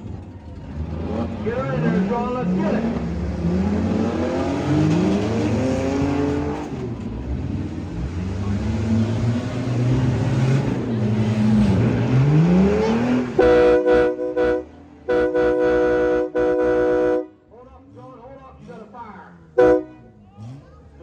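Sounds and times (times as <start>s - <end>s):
car engines revving: 0.0s - 21.0s
loud steady horn blast: 13.4s - 17.5s, 19.6s - 20.2s.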